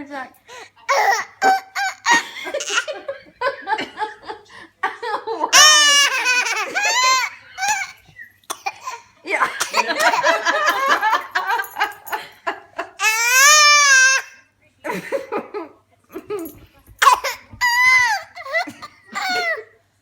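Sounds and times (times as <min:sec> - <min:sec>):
toddler laughing: 0:00.9 - 0:03.0, 0:05.5 - 0:11.8, 0:13.0 - 0:14.3, 0:17.0 - 0:19.7
toddler high-pitched squeals: 0:13.0 - 0:14.4, 0:17.0 - 0:19.6.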